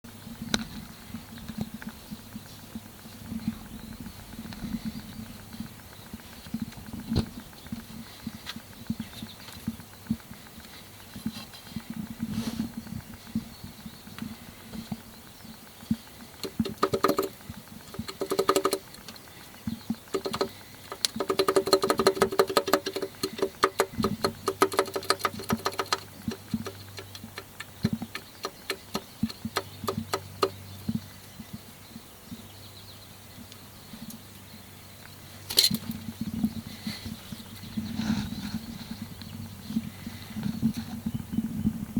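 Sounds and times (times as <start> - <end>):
car engine knocking: 16.3 - 30.6.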